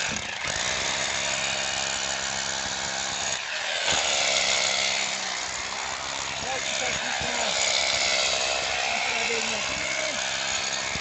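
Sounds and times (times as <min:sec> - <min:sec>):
electric drill drilling into stone: 0:00.0 - 0:11.0.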